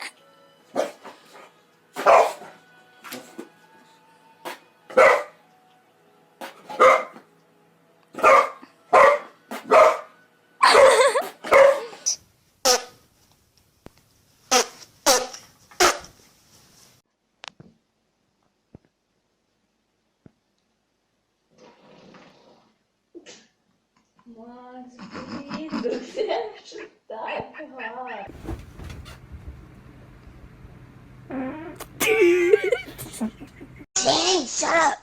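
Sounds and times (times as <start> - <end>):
dog barking: 0.7 - 1.2, 2.0 - 2.6, 4.5 - 5.4, 6.6 - 7.2, 8.2 - 12.1.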